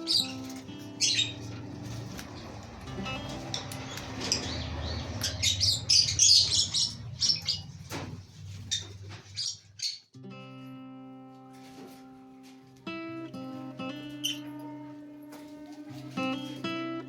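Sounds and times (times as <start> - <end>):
acoustic guitar music: 0.0 - 9.5, 10.1 - 17.0
lovebirds chirping and squawking: 0.0 - 10.2, 13.8 - 16.6.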